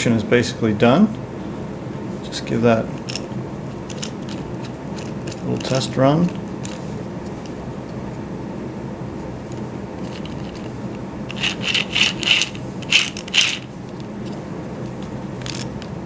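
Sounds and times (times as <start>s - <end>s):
gears scraping and rattling: 2.9s - 7.6s, 9.5s - 16.0s
motor low hum: 6.3s - 16.0s.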